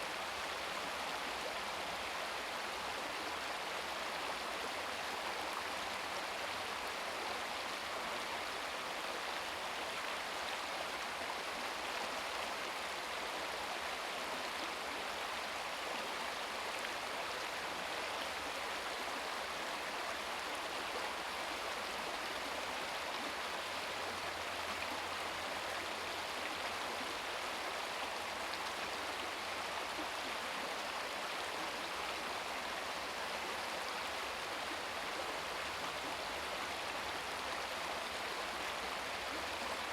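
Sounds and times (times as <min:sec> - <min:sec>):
brook babbling over rocks: 0:00.0 - 0:39.9.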